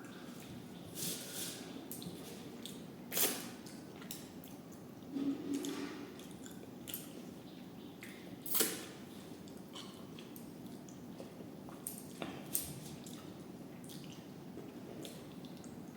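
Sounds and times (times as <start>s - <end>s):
wet chewing sounds: 9.4s - 15.8s.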